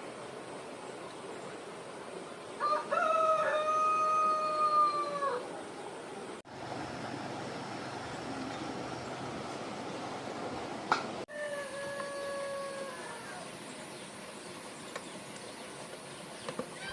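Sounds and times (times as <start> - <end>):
steady background hiss: 0.0 - 16.9
rooster crowing: 2.6 - 5.5, 11.3 - 13.5.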